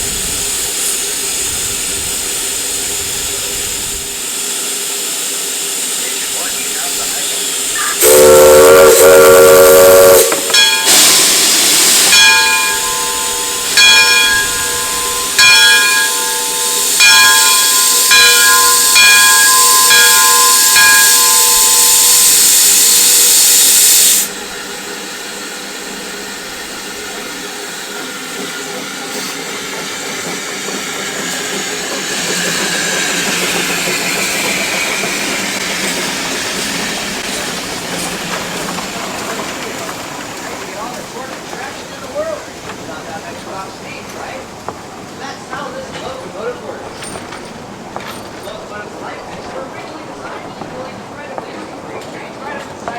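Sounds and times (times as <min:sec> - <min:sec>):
steam hissing: 0:00.0 - 0:51.2
steam locomotive whistle: 0:06.0 - 0:24.4
locomotive bell ringing: 0:09.4 - 0:22.6.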